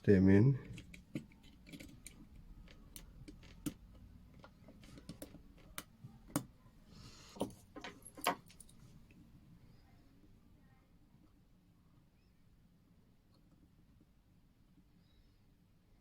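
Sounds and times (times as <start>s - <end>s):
metal clicks of watchmaking tools: 0.6s - 6.5s.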